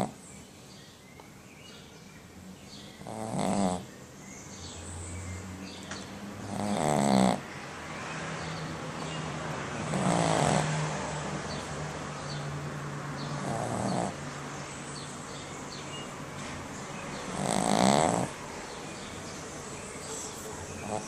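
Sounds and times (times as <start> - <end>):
pet snoring: 3.0 - 3.9, 6.4 - 7.4, 9.8 - 10.9, 13.3 - 14.2, 17.3 - 18.4, 20.1 - 21.0.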